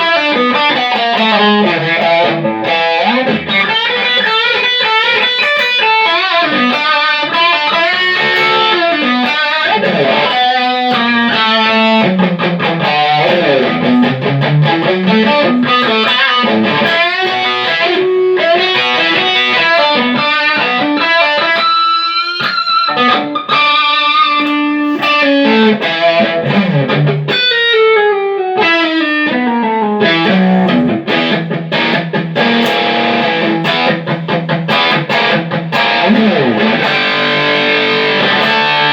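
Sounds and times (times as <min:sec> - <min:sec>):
distorted electric guitar lead lines: 0:00.0 - 0:38.9.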